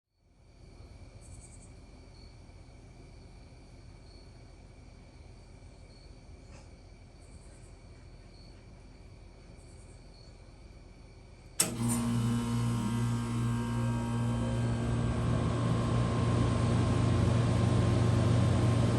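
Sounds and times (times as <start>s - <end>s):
crickets chirping: 0.2s - 11.6s
heat pump switch click: 11.6s - 16.5s
heat pump humming: 11.6s - 18.9s.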